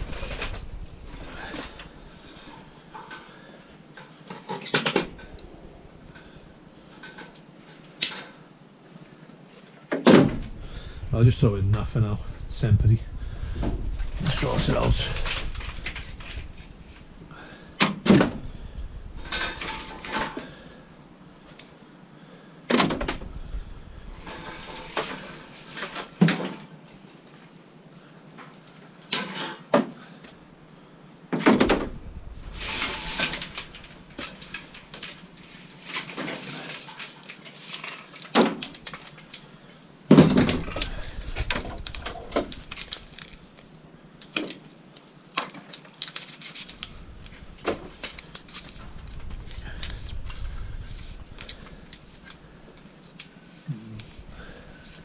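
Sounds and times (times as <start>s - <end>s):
scraping and shuffling: 0.0s - 7.9s, 10.4s - 20.7s, 46.0s - 55.0s
scrap metal clanking: 32.5s - 35.2s.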